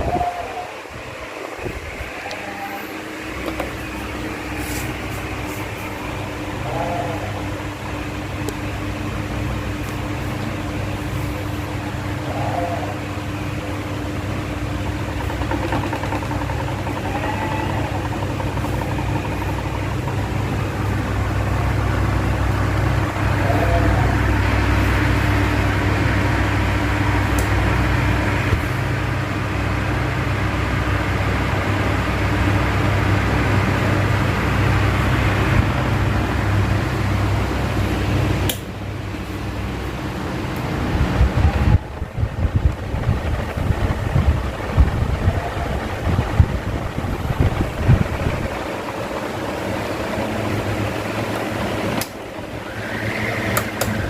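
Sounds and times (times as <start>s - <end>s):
wind buffeting microphone: 0.0s - 2.2s, 40.7s - 52.7s
electric fan running: 0.0s - 54.0s.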